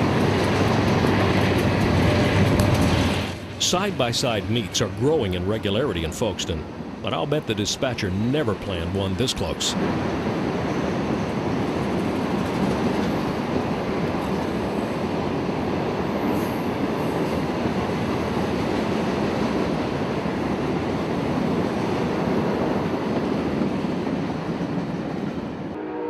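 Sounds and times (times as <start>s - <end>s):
train wheels on rail: 0.0s - 4.0s, 9.2s - 25.8s.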